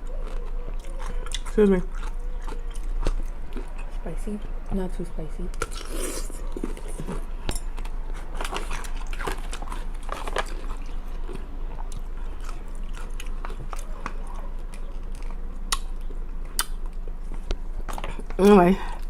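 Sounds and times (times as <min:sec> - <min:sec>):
crunching pickle: 0:00.0 - 0:04.7, 0:05.5 - 0:18.6.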